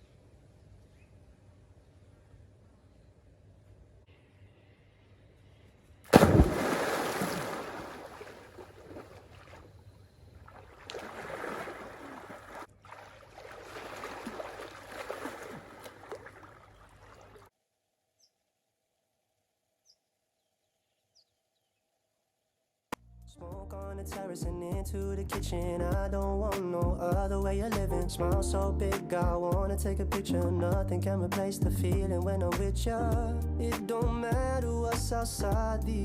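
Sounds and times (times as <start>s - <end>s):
water splashing and rushing: 6.1s - 9.7s, 10.5s - 17.5s.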